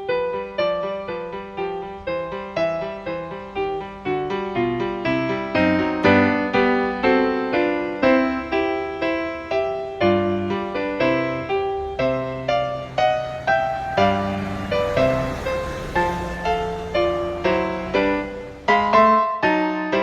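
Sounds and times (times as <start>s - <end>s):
piano music: 0.0s - 20.0s.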